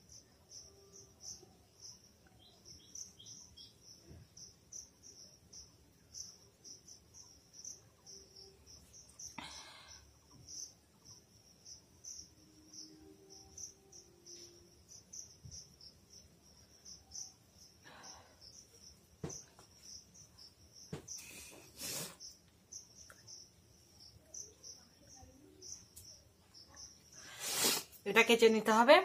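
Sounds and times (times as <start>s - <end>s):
crickets chirping: 0.0s - 29.0s
person blowing her nose: 21.5s - 22.2s, 27.3s - 28.0s.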